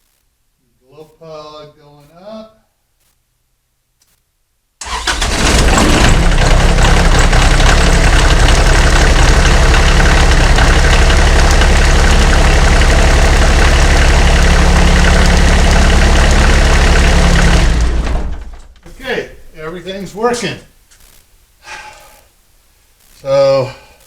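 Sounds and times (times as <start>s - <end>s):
tractor diesel engine starting: 4.8s - 20.3s.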